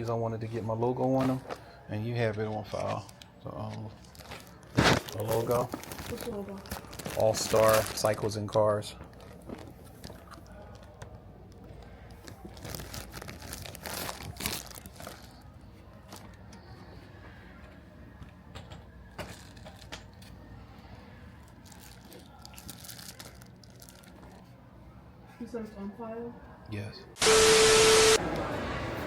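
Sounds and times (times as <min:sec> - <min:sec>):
rustling and crinkling: 0:02.5 - 0:16.7, 0:19.1 - 0:20.4, 0:21.4 - 0:24.6.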